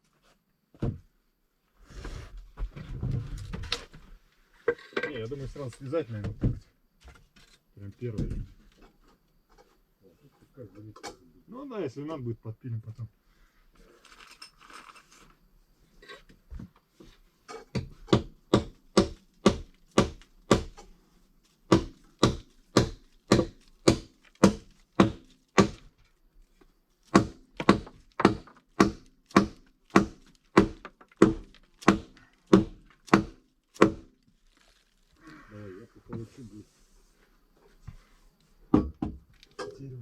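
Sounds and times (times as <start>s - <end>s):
tool striking wood: 17.7s - 20.9s, 21.7s - 25.9s, 27.1s - 34.2s.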